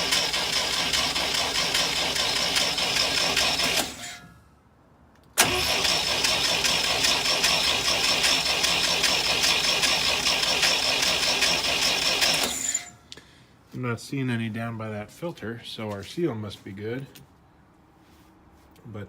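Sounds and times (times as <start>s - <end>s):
engine cranking on starter: 0.0s - 4.2s, 5.4s - 12.9s.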